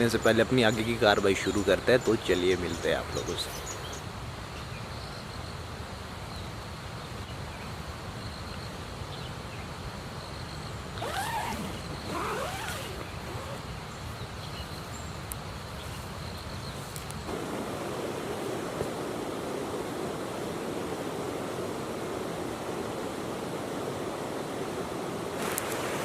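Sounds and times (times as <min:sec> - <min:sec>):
gliding animal calls: 0:11.0 - 0:13.7
river water rushing: 0:11.0 - 0:14.1, 0:17.2 - 0:26.0.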